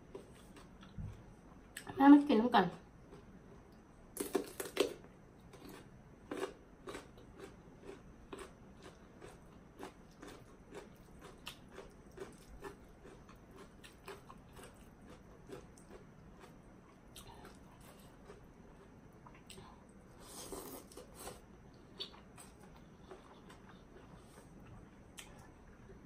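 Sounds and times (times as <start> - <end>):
chewing with wet clicks: 5.4 - 19.7, 21.7 - 25.6.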